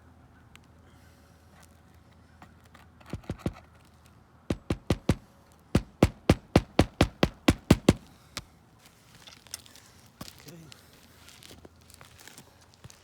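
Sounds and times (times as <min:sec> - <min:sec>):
hammer driving nails: 0:03.0 - 0:03.7, 0:04.5 - 0:05.2, 0:05.8 - 0:08.1.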